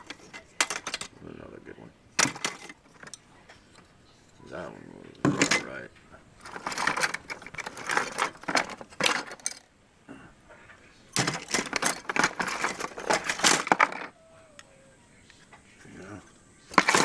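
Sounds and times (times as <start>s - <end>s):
small hard parts clattering: 0.0s - 1.2s, 2.1s - 4.4s, 5.2s - 9.7s, 10.5s - 14.2s, 15.4s - 17.0s.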